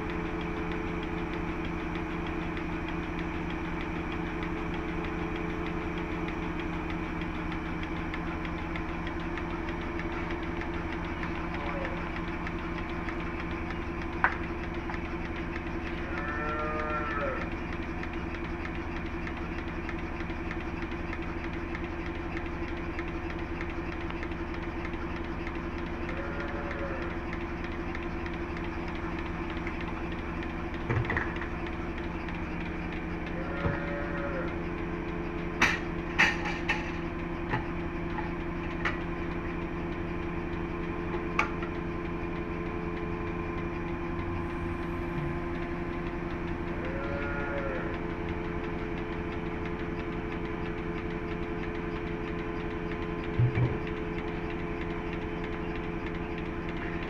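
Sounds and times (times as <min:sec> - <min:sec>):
steady machine hum: 0:00.0 - 0:57.0
cattle mooing: 0:16.0 - 0:17.5, 0:26.1 - 0:27.2, 0:33.3 - 0:34.6, 0:46.7 - 0:48.0
sharp knocks and clanks: 0:30.8 - 0:31.6, 0:35.6 - 0:39.0, 0:53.3 - 0:54.0.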